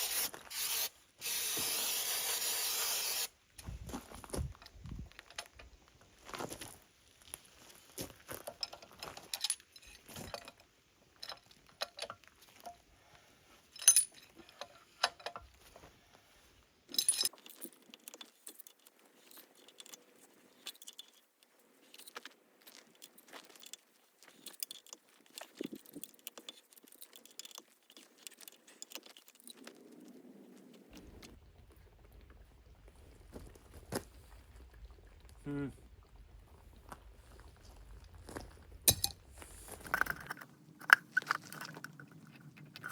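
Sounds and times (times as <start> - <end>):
metal tools clinking and rattling: 8.4 - 12.8, 13.7 - 15.5, 16.9 - 22.2, 38.9 - 39.2
sharp metallic clanks: 38.9 - 39.2.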